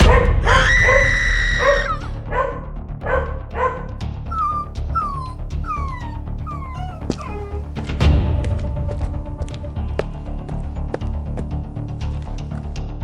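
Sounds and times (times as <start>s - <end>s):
background music: 0.0s - 13.0s
puppy crying: 0.5s - 7.8s.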